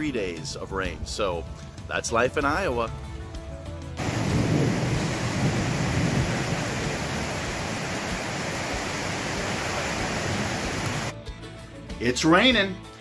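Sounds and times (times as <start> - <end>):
heavy rain: 4.0 - 11.2.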